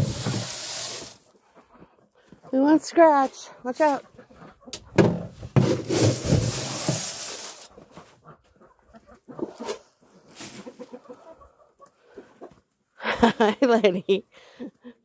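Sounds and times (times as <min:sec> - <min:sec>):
grain pouring hiss: 0:00.0 - 0:01.3, 0:05.8 - 0:07.7.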